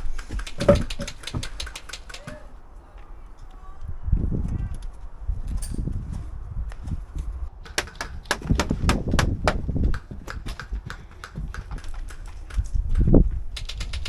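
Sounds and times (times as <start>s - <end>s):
airsoft guns firing: 0.0s - 2.6s, 7.6s - 14.0s.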